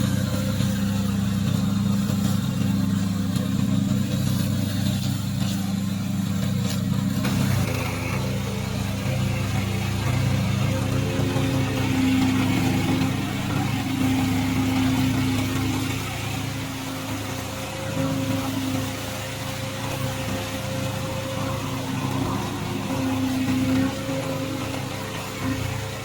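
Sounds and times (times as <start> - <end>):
mower engine running: 0.0 - 26.0.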